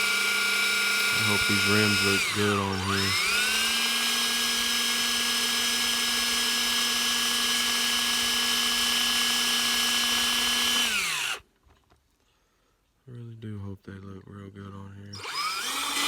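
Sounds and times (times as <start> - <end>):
small electric drill whining: 0.0 - 11.4, 15.2 - 16.0.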